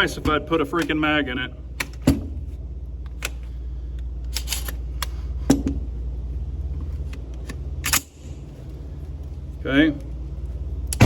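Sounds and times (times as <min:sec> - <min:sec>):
steady low hum: 0:00.0 - 0:11.0
rifle loading clicks and clacks: 0:04.3 - 0:05.2, 0:07.2 - 0:08.1.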